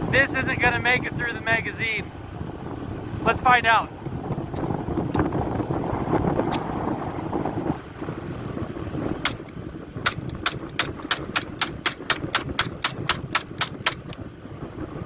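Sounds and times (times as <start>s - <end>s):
pistol shots: 10.1s - 14.2s.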